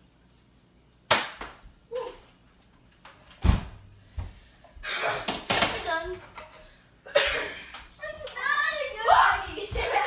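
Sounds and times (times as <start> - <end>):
foam darts hitting: 1.1 - 1.6.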